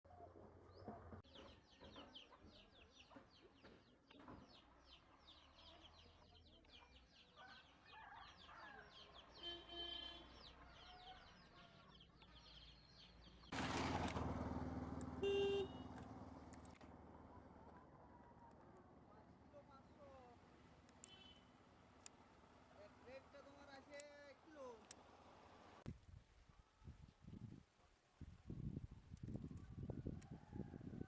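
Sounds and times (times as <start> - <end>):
vehicle passing: 13.5 - 17.7
horn beep: 15.2 - 15.9.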